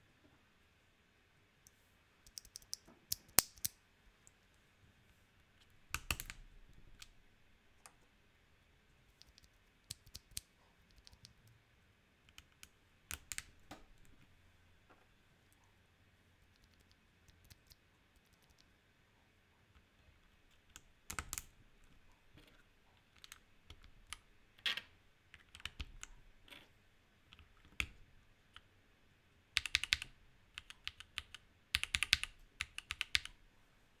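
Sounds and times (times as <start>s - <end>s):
mechanical keyboard keystrokes: 2.3s - 3.7s, 5.9s - 7.1s, 9.2s - 11.4s, 12.3s - 13.8s, 21.1s - 21.5s, 29.6s - 33.4s.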